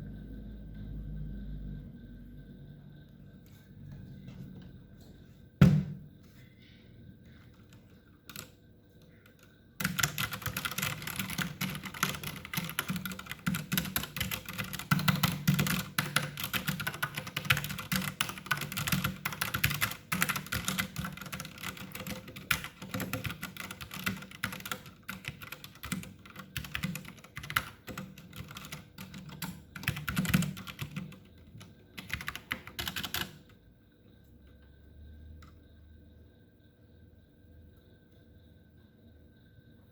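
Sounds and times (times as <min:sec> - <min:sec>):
mechanical keyboard typing: 0:07.7 - 0:08.6, 0:09.3 - 0:33.6.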